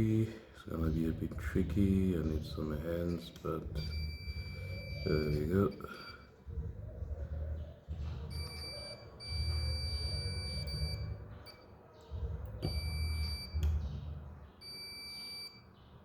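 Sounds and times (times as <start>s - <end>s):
multimeter continuity beep: 3.7s - 6.3s, 8.3s - 11.7s, 12.6s - 13.8s, 14.6s - 15.7s.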